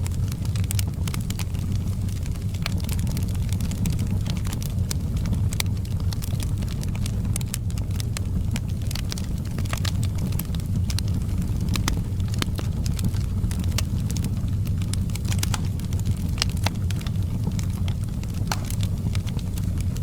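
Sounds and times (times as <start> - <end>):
low rumble of flames: 0.0 - 20.0
wood fire crackling and popping: 0.0 - 20.0.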